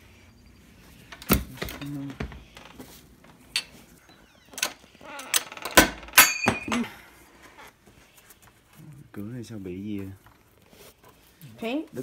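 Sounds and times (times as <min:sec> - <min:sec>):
metallic clatter and ring: 0:06.1 - 0:06.9.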